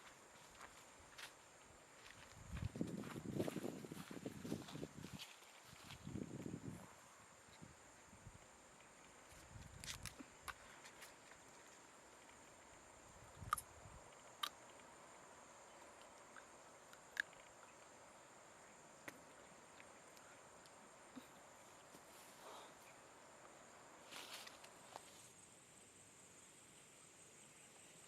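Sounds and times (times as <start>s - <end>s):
high insect drone: 0.0s - 28.0s.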